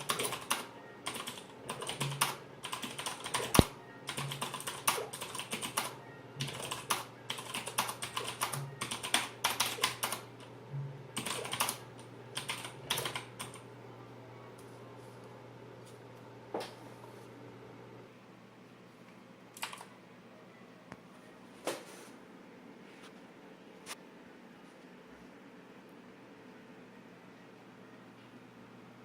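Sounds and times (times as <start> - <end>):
mechanical keyboard typing: 0.0 - 10.3, 11.2 - 11.8, 12.4 - 13.6, 19.6 - 19.9.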